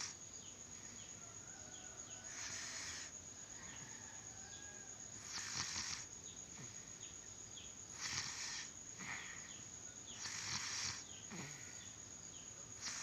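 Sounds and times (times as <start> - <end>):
rasping snoring: 2.2 - 3.2, 5.2 - 6.8, 7.9 - 9.4, 10.1 - 11.9, 12.8 - 13.0.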